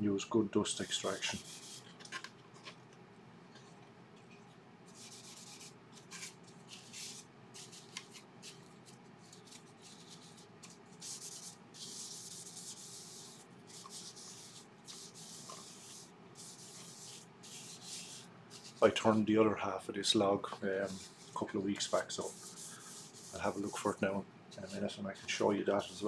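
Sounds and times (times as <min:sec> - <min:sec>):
soft hiss of hand rubbing wood: 0:00.6 - 0:02.0, 0:04.9 - 0:26.0.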